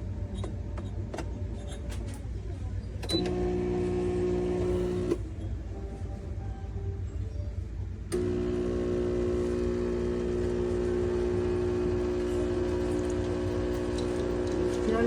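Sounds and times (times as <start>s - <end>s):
espresso machine pump buzzing: 3.2s - 5.2s, 8.1s - 15.0s.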